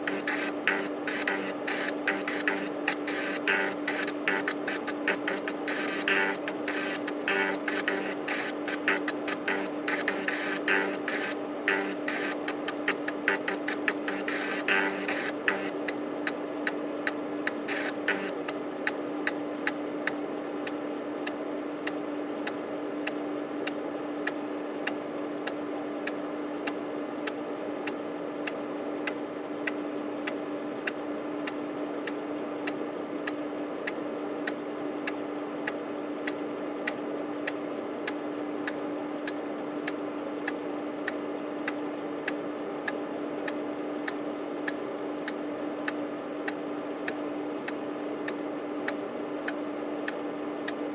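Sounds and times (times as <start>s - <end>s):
stepper motor clicking: 0.0s - 16.4s, 17.5s - 19.0s
floppy drive motor hum: 0.0s - 21.8s.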